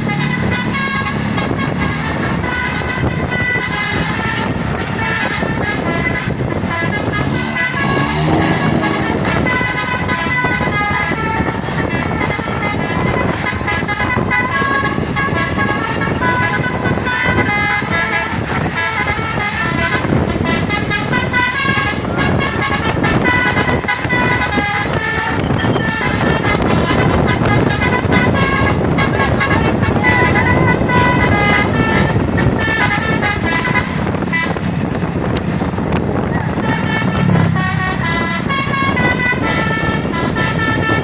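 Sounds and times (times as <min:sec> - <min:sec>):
bus engine rumbling: 0:00.0 - 0:41.0
musical bus horn melody: 0:00.0 - 0:41.0.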